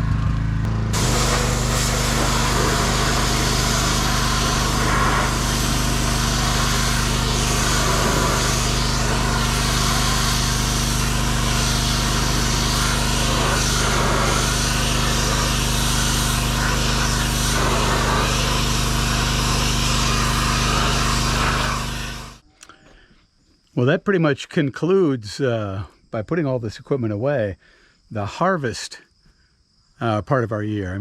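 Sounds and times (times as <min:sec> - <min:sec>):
pressure washer engine hum: 0:00.0 - 0:22.4
water jet hissing: 0:00.9 - 0:22.4.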